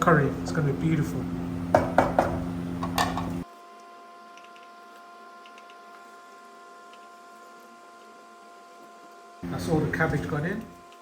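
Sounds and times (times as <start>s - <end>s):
steady low hum: 0.0s - 3.4s, 9.4s - 10.8s
utensil knocking against cooking pot: 1.7s - 3.3s.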